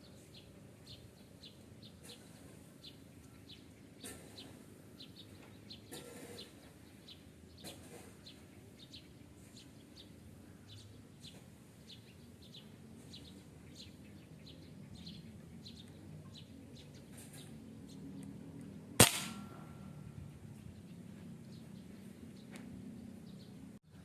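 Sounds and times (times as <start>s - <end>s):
small birds chirping: 0.0s - 24.0s
air rifle shot: 19.0s - 19.7s.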